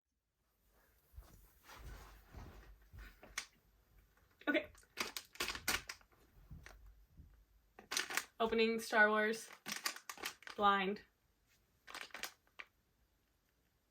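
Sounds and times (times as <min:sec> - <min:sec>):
packaging crinkling and clicking: 0:04.7 - 0:06.8, 0:07.8 - 0:08.4, 0:09.4 - 0:10.6, 0:11.9 - 0:12.7.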